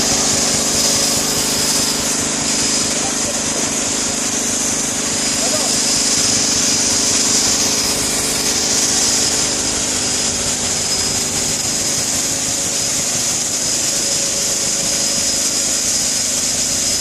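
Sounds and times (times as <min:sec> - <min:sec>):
engine drone: 0:00.0 - 0:17.0
hiss: 0:00.0 - 0:17.0
thin high whine: 0:00.0 - 0:17.0.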